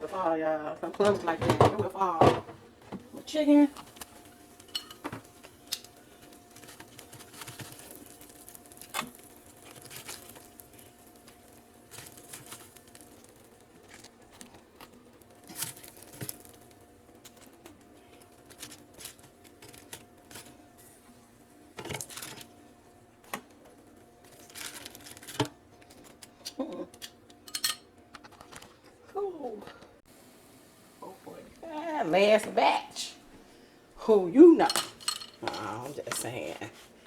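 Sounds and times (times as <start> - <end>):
faint appliance hum: 0.0 - 37.0
kitchen things clattering: 0.8 - 5.9, 21.8 - 22.6, 24.2 - 28.8, 34.4 - 36.8.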